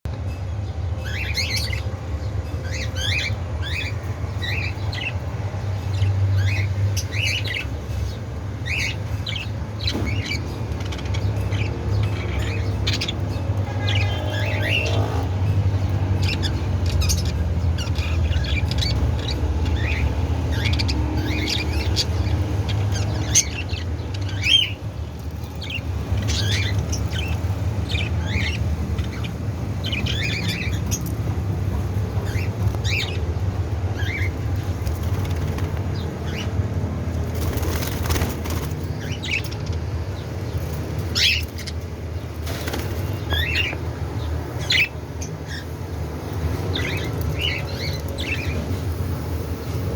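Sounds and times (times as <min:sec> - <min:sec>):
budgerigars chirping and squawking: 0:00.3 - 0:49.9
wing flutters: 0:37.2 - 0:39.1.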